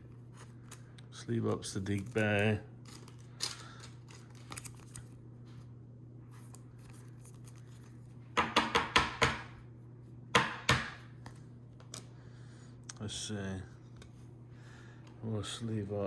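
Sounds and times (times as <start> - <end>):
faint steady hum: 0.0 - 16.0
plastic sleeve crinkling: 1.6 - 5.2.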